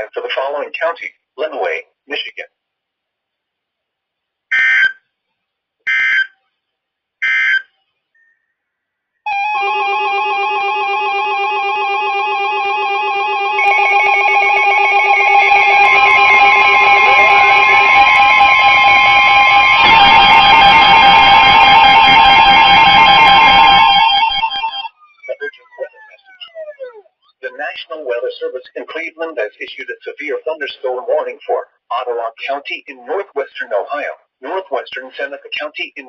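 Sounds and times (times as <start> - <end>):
music of sustained tones: 9.3 - 25.0
digital data tone bursts: 13.6 - 27.6.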